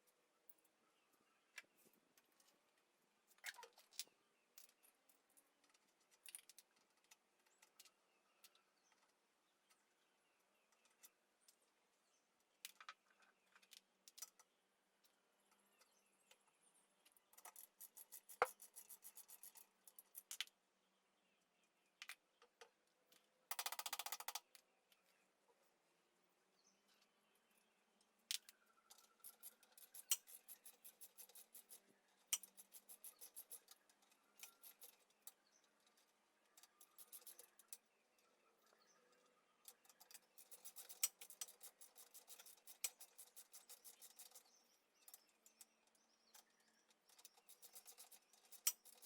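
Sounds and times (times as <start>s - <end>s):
hand tools clicking and clinking: 28.4s - 36.0s, 39.7s - 44.4s.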